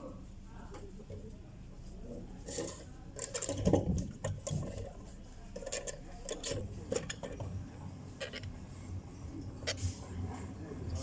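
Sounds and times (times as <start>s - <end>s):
tools clicking and knocking on metal: 2.5s - 4.9s, 5.6s - 7.5s.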